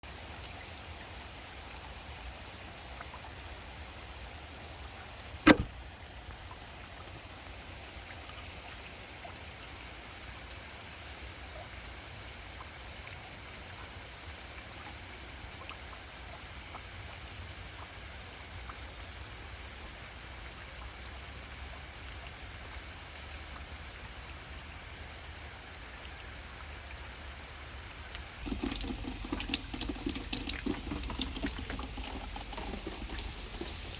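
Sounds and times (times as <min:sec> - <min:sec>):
steady rain falling: 0:00.0 - 0:33.9
sharp knock: 0:05.5 - 0:05.7
running splashing water: 0:28.4 - 0:33.9.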